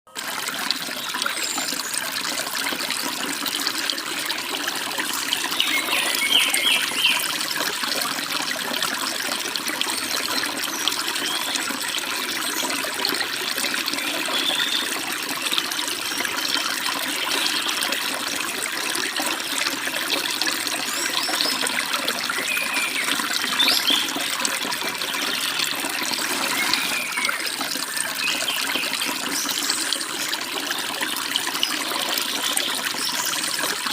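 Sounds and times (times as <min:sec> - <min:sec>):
stream babbling: 0:00.2 - 0:33.9
bird chirps: 0:05.5 - 0:07.2, 0:22.3 - 0:24.1, 0:26.4 - 0:29.0.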